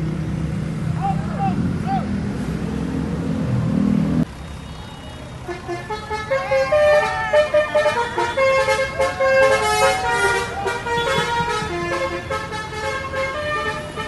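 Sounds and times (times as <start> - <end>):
multi-tone musical horn: 5.6 - 14.0.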